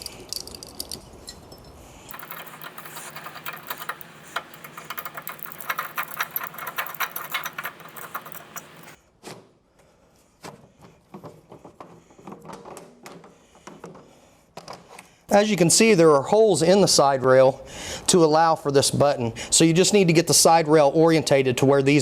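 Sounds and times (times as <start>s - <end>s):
parts knocking and clicking: 2.1s - 9.0s
power tool clicking rapidly: 2.1s - 9.0s.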